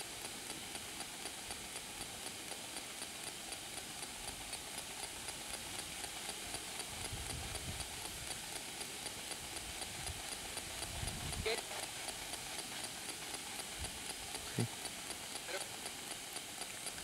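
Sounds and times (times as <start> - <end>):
soft regular ticking: 0.0 - 17.0
radio static hiss: 11.4 - 12.1, 13.4 - 16.0.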